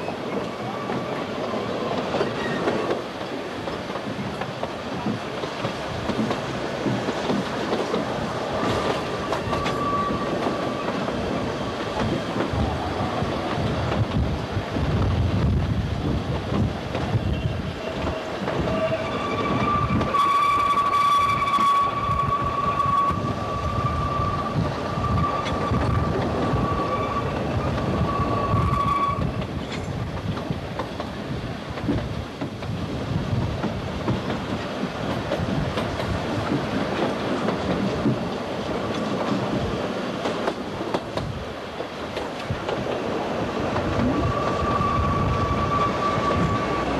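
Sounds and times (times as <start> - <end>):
train rumbling with wheels clicking: 0.0 - 46.9.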